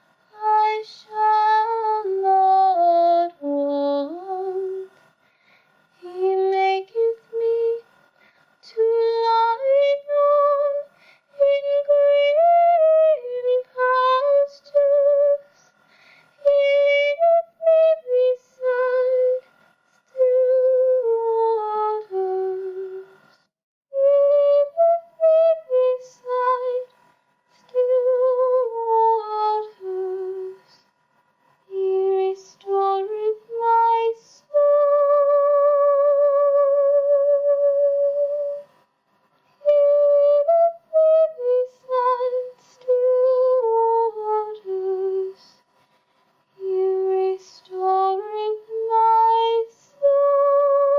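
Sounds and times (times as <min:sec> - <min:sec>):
woman singing a cappella: 0:00.3 - 0:05.1, 0:05.9 - 0:08.0, 0:08.6 - 0:15.8, 0:16.4 - 0:23.4, 0:24.0 - 0:30.8, 0:31.7 - 0:38.8, 0:39.6 - 0:45.8, 0:46.6 - 0:50.9.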